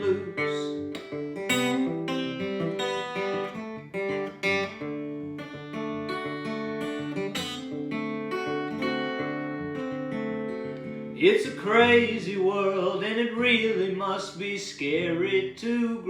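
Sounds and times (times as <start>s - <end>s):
acoustic guitar strumming: 0.0s - 16.0s.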